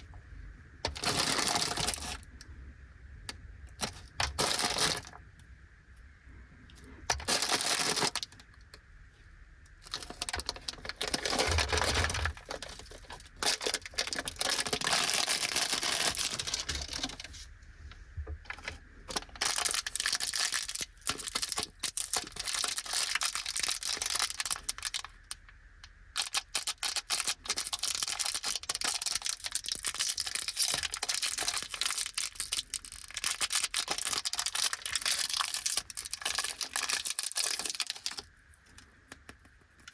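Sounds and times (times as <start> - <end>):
plastic wrappers crinkling and tearing: 0.8 - 2.3, 3.8 - 5.2, 7.1 - 8.6, 9.8 - 17.5, 18.5 - 25.4, 26.2 - 38.3.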